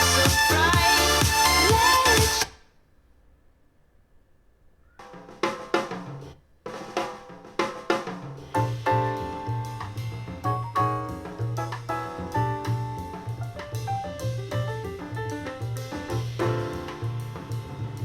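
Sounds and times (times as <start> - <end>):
band music from speaker: 0.0 - 2.5, 8.6 - 18.0
bass line: 0.0 - 2.5, 8.6 - 18.0
drum-kit hits: 5.1 - 18.0.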